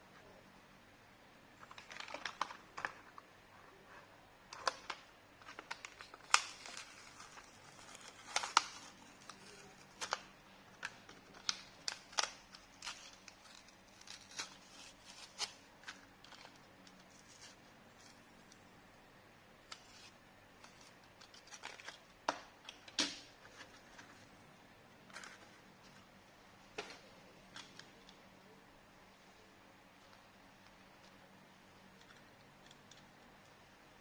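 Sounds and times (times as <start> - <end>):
packaging crinkling: 1.6 - 3.2, 4.5 - 18.5, 19.7 - 24.3
plastic and cardboard clicks and snaps: 4.5 - 7.1, 7.8 - 14.6, 20.6 - 23.3.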